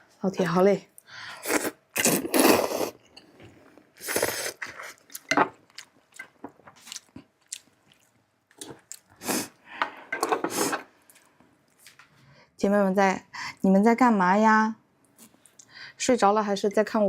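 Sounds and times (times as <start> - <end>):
person chewing food: 1.4 - 9.6.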